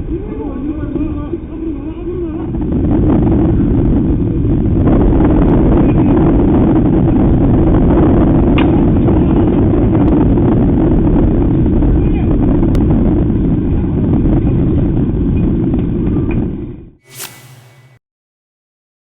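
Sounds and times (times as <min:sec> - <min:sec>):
wind buffeting microphone: 0:00.0 - 0:16.5
sharp click: 0:17.1 - 0:18.0.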